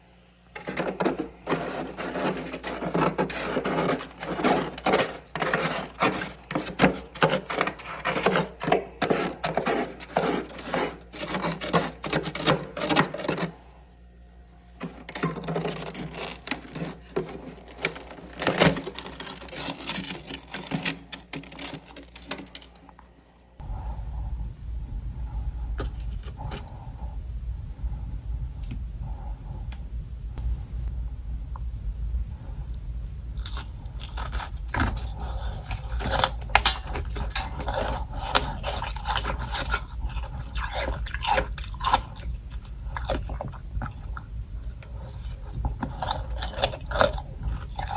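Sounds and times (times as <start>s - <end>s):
frost crunching and crackling: 0.6s - 13.6s, 14.8s - 23.0s, 32.7s - 47.9s.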